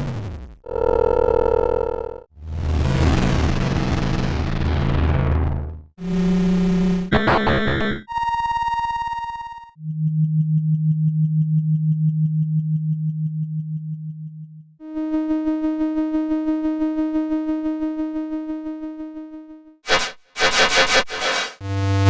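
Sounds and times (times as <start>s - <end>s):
short high electronic tone: 7.1s - 8.3s
mid-pitched pulsing tone: 7.1s - 9.6s, 19.9s - 22.0s.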